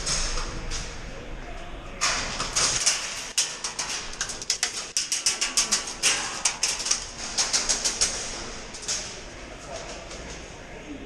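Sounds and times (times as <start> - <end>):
pellets hitting surfaces: 2.0 - 10.4.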